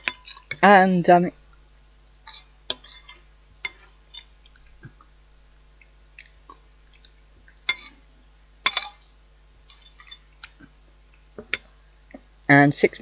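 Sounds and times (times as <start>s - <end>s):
spoon clinking against a bowl: 7.7s - 8.0s, 8.7s - 9.1s.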